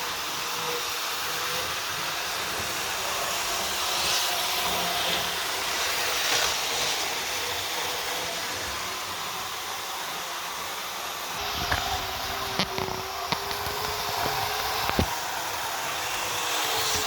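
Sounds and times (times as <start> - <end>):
model train whirring on track: 0.0 - 17.0.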